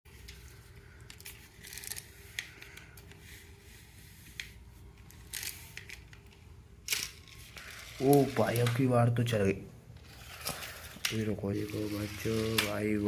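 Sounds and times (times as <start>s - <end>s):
objects clicking and rustling: 4.3s - 8.9s, 10.0s - 12.9s.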